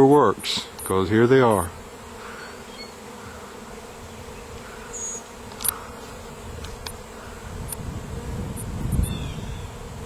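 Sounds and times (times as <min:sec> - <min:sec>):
bees buzzing: 0:00.0 - 0:10.0
sharp click: 0:05.5 - 0:05.8.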